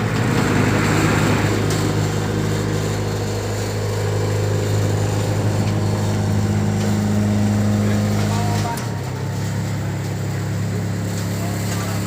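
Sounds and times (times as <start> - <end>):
machine motor humming: 0.0 - 12.0.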